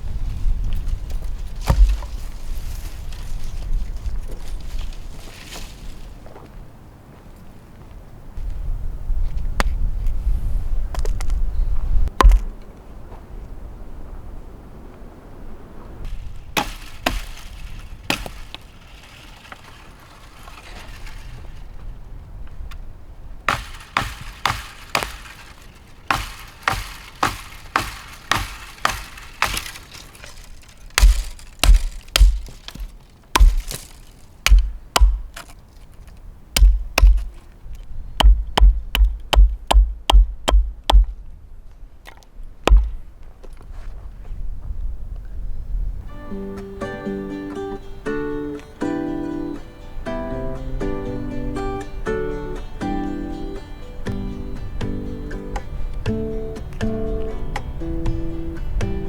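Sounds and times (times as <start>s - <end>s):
wood being chopped: 1.6s - 2.3s, 12.2s - 12.6s, 16.1s - 21.3s, 23.5s - 35.6s, 36.6s - 37.4s, 38.2s - 41.2s, 42.7s - 43.0s
acoustic guitar strumming chords: 46.1s - 59.0s.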